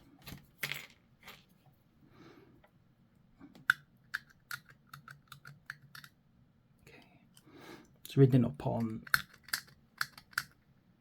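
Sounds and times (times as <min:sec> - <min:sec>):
plastic parts rustling: 0:00.2 - 0:01.6.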